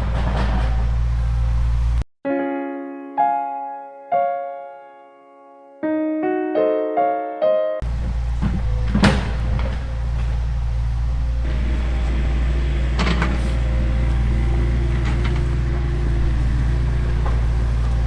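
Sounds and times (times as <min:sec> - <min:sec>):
model machinery humming: 0:07.8 - 0:18.0.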